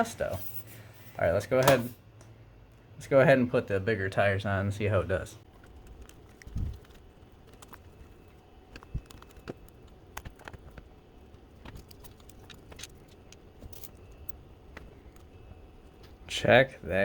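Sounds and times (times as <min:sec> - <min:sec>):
small parts clicking and tapping: 0:05.5 - 0:16.2.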